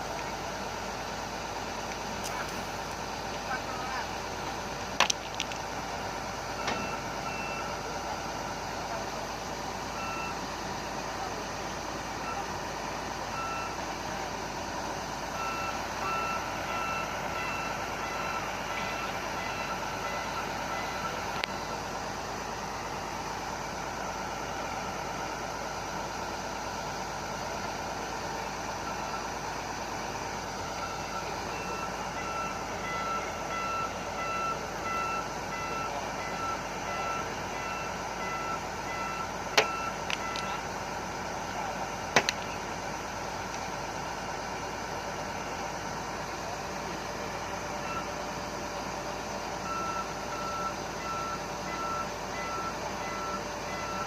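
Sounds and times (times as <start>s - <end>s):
reversing alarm beeping: 6.4s - 10.5s, 12.1s - 12.6s, 13.3s - 13.9s, 15.3s - 21.8s, 30.4s - 40.8s, 47.8s - 48.2s, 49.5s - 54.0s.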